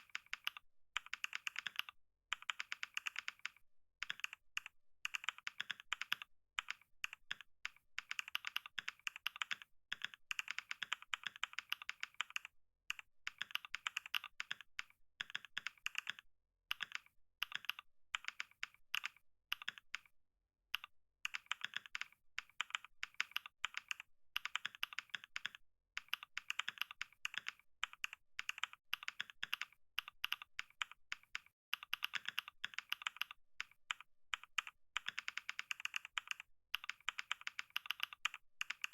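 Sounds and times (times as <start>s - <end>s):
fast typing on keyboard: 0.0s - 20.1s, 20.8s - 38.9s.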